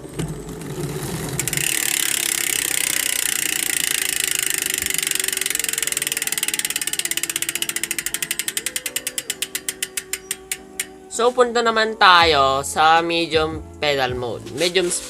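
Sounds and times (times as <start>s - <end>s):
bike hub ratchet clicking: 0.4s - 11.1s.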